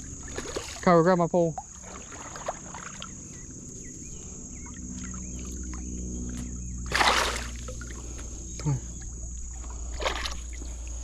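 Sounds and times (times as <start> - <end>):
low motor hum: 0.0 - 11.0
high-pitched whine: 3.2 - 10.8
fish splashing at surface: 6.8 - 8.4.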